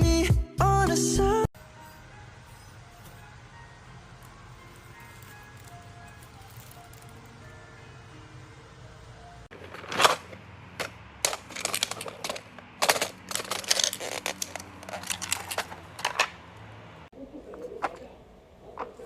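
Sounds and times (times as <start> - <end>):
faint background music: 0.0 - 10.8.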